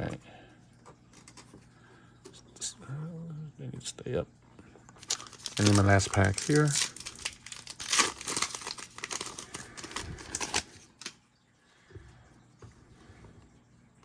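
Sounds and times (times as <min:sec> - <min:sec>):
wrapper tearing and crinkling: 0:05.0 - 0:11.2.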